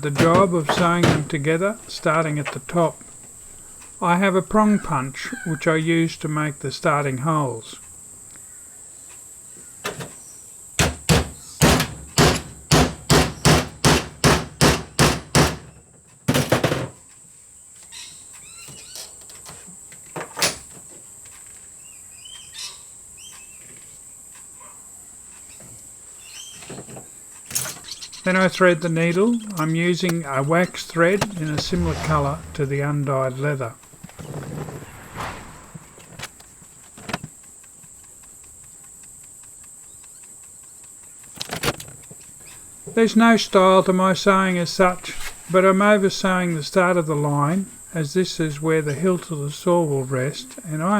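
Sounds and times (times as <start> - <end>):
insect trill: 0.0 - 50.9
bird chirps: 1.3 - 5.8, 17.9 - 19.0, 21.8 - 23.6, 25.5 - 26.7, 27.8 - 33.0
mallet striking leather punch: 10.8 - 15.6
high-pitched whine: 28.2 - 37.3.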